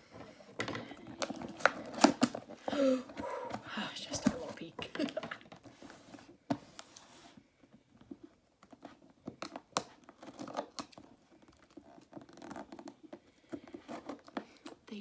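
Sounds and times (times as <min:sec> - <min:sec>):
cardboard rustling: 0:00.0 - 0:15.0
packing tape tearing: 0:00.8 - 0:02.6, 0:08.9 - 0:14.8.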